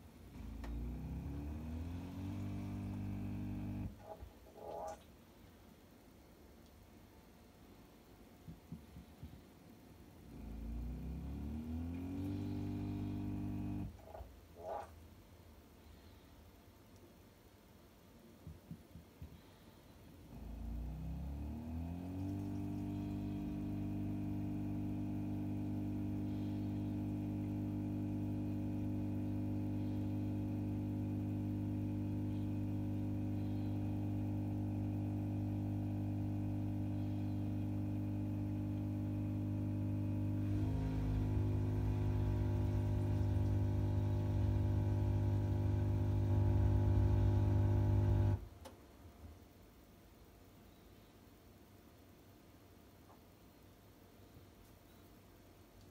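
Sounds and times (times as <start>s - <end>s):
dishwasher pump motor hum: 0.0s - 5.0s, 10.3s - 14.9s, 20.3s - 48.5s.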